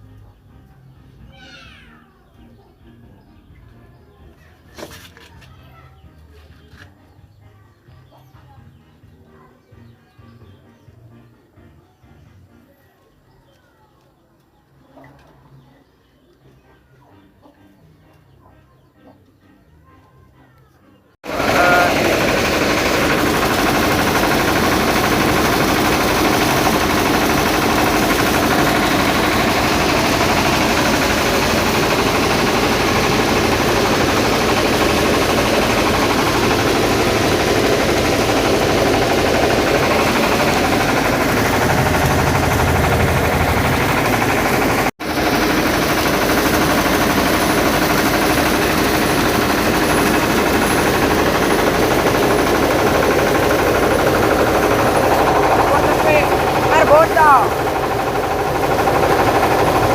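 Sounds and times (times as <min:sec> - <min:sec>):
machine clattering loudly: 0:21.2 - 0:59.9.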